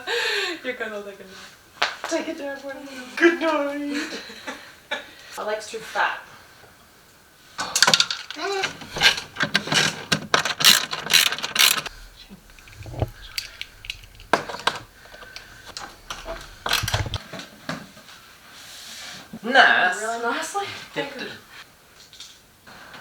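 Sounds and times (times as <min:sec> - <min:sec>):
furniture panels clicking and knocking: 0:07.9 - 0:17.2.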